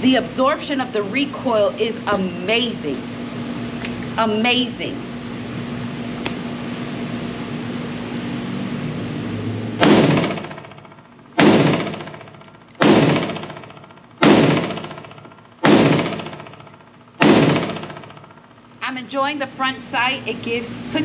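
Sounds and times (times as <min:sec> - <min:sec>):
steady hum: 0:00.0 - 0:21.0
rifle shots: 0:09.8 - 0:18.4
ringing echo: 0:09.8 - 0:18.8.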